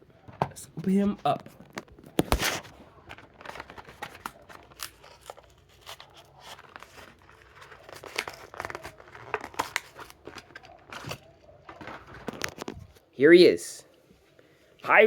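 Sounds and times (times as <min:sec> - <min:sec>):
plastic crinkling: 0:01.2 - 0:13.0
cardboard tearing: 0:01.4 - 0:12.8.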